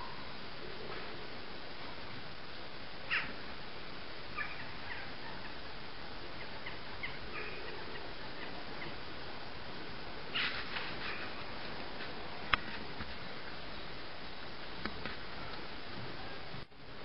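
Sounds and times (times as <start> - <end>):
faint bird chirps: 0.0 - 0.4, 4.3 - 9.0
steady background hiss: 0.0 - 17.0.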